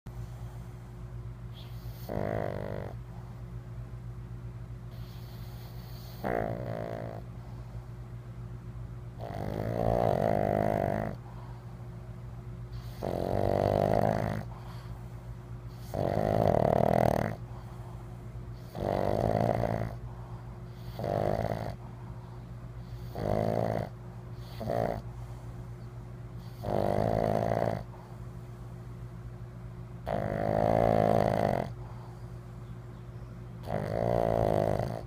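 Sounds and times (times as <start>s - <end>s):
dog snoring: 1.5s - 3.4s, 4.9s - 7.6s, 9.2s - 11.7s, 12.7s - 22.0s, 22.8s - 25.4s, 26.4s - 28.2s, 30.0s - 32.3s, 33.6s - 35.0s.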